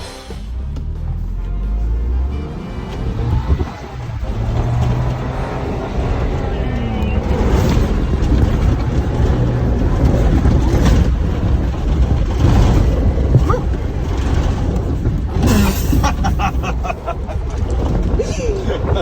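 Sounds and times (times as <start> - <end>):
engine and road rumble: 0.0 - 19.0.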